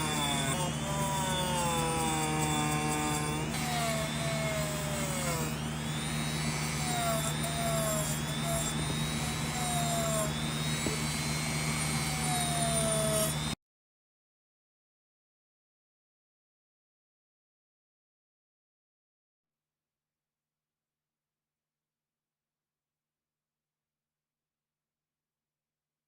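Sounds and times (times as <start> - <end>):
small power tool motor whining: 0.0 - 13.6.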